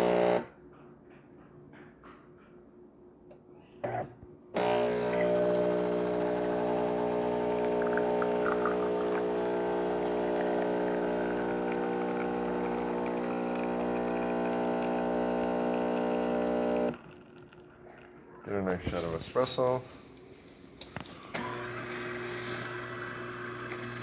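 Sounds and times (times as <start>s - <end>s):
water pump buzzing: 0.0s - 0.4s, 4.6s - 17.7s, 21.4s - 24.0s.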